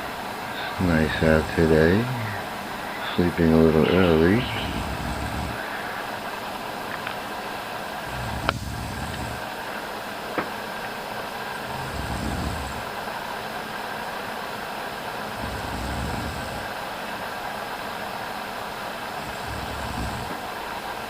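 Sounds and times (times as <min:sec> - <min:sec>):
background hiss: 0:00.0 - 0:14.5, 0:15.1 - 0:21.0
woman snoring: 0:00.5 - 0:06.3, 0:08.0 - 0:09.5, 0:11.6 - 0:12.9, 0:15.3 - 0:16.8, 0:19.2 - 0:20.4.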